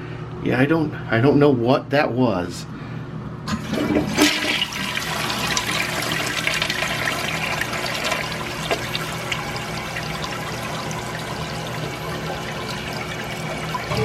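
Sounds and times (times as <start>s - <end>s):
rushing toilet water: 3.5s - 14.0s
toilet flush click: 3.5s - 14.0s.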